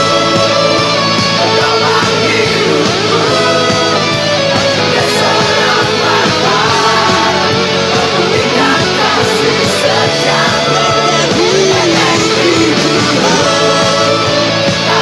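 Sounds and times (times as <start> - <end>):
band backing track: 0.0 - 15.0
lead guitar melody: 0.0 - 15.0.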